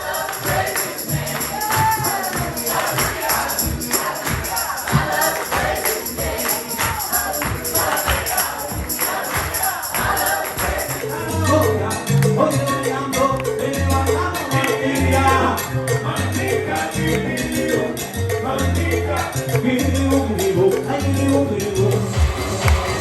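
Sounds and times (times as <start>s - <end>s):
band with steady beat: 0.0s - 10.8s, 22.0s - 23.0s
jingling percussion: 0.0s - 20.9s
group singing gospel-like music: 0.0s - 23.0s.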